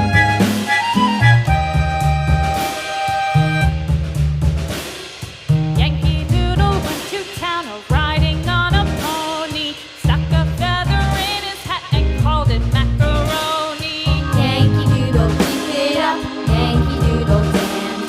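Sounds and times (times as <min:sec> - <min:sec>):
wavering lead melody: 0:00.0 - 0:03.8, 0:14.1 - 0:18.0
heavy bass line: 0:00.0 - 0:04.8, 0:14.1 - 0:17.8.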